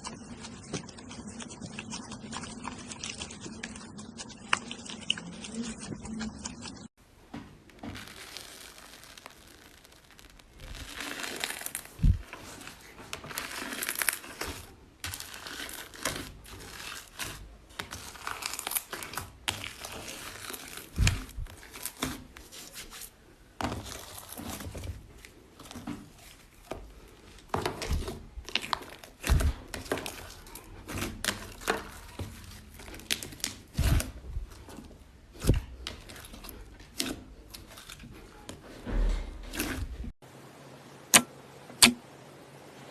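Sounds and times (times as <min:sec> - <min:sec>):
slime crackling and popping: 0:07.6 - 0:22.7
thuds: 0:38.8 - 0:40.1.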